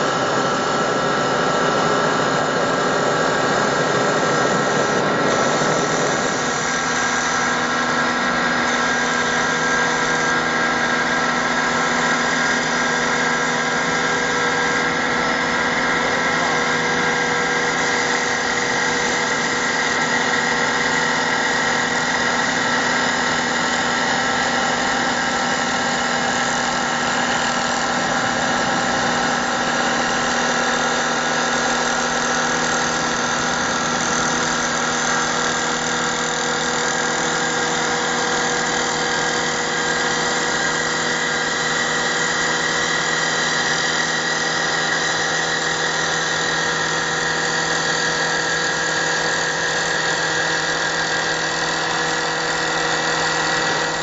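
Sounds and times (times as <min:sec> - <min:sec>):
wood lathe drone: 0:00.0 - 0:54.0.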